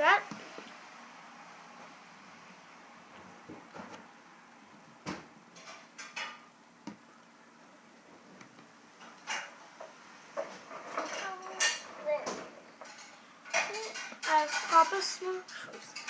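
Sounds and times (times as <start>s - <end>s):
plastic toys clicking and knocking: 11.0s - 16.0s.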